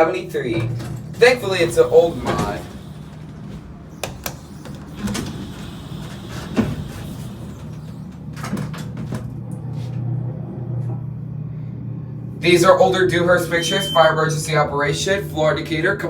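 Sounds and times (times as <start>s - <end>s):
elevator doors sliding: 0.0s - 16.0s
steady low hum: 0.0s - 16.0s
sharp clicks and knocks: 4.0s - 5.4s.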